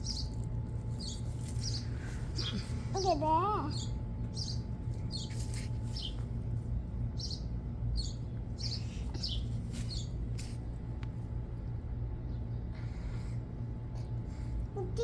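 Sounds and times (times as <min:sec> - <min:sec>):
small bird chirping: 0:00.0 - 0:06.3, 0:07.1 - 0:10.5
low steady hum: 0:00.0 - 0:15.0.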